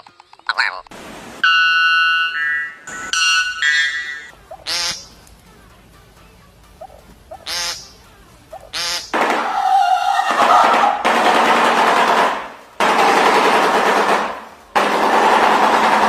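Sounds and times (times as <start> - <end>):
bird calls: 1.5 - 5.4, 6.7 - 11.0
harsh rapid bird rattle: 6.7 - 9.6.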